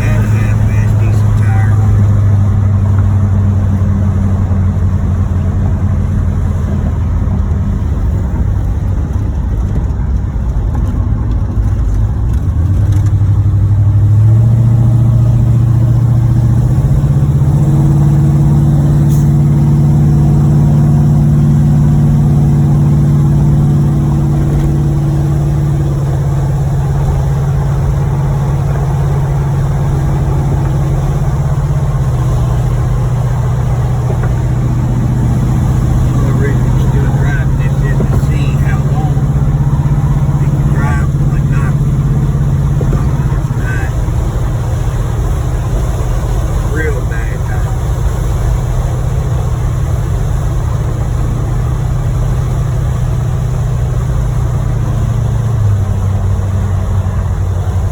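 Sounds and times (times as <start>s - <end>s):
car engine with rod knock: 2.6s - 3.2s, 24.3s - 25.0s, 26.9s - 46.7s.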